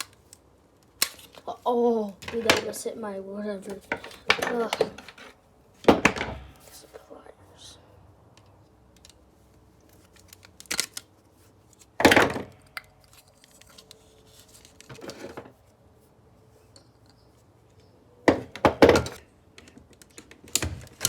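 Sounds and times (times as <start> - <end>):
knocks and clatters of plastic parts: 2.2 - 2.8, 3.7 - 6.6, 12.0 - 12.8, 18.3 - 21.0.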